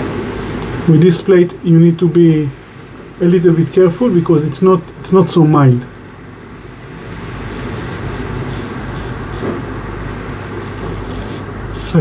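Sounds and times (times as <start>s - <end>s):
safety razor scraping stubble: 0.0s - 0.7s, 6.5s - 12.0s.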